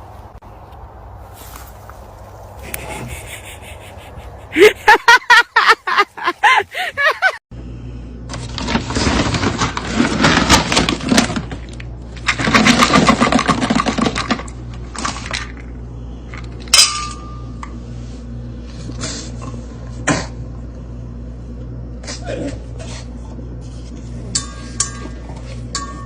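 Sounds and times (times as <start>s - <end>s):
hard objects clattering: 8.4s - 15.7s
sharp ringing clink: 16.7s - 17.6s.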